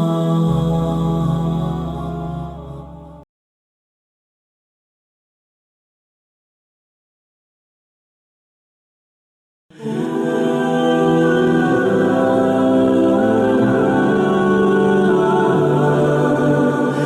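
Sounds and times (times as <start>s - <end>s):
layered voices holding long notes: 0.0s - 3.2s, 9.7s - 17.0s.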